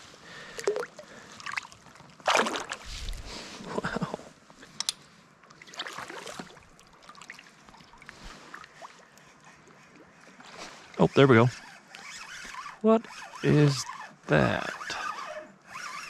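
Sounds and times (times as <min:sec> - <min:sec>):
water splashing around kayak: 0:00.5 - 0:03.4, 0:05.6 - 0:11.0.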